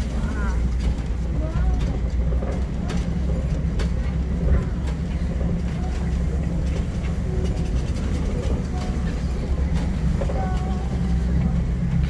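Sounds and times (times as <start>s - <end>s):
truck engine and road rumble: 0.0s - 12.0s.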